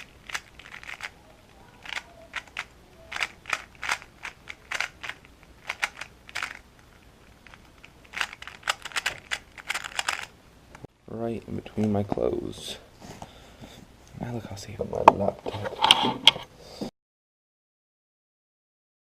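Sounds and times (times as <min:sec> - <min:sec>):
plastic items clicking and clacking: 0:00.0 - 0:01.2, 0:01.8 - 0:06.6, 0:07.4 - 0:10.3.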